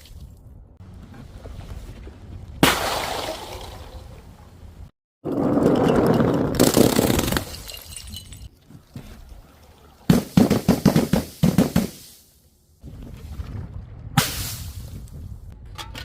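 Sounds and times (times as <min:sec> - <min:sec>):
things being crushed crackling: 0:05.5 - 0:08.1.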